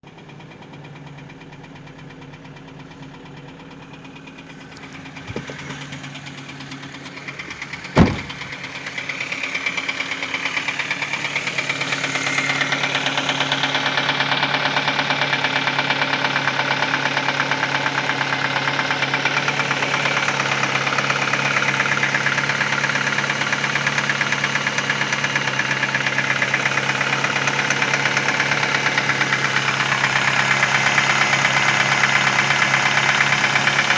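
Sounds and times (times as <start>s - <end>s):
car engine idling: 0.1s - 33.9s
sharp loud engine knock: 6.5s - 8.8s.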